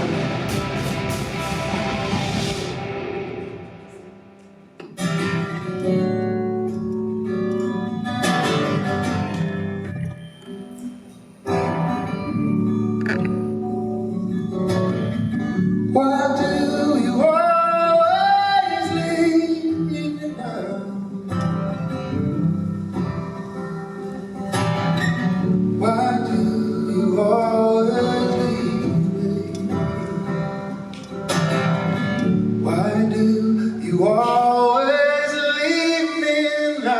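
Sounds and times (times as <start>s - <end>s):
acoustic guitar strumming chords: 0.0s - 36.9s
person singing: 15.9s - 21.9s, 25.8s - 30.9s, 32.6s - 36.9s.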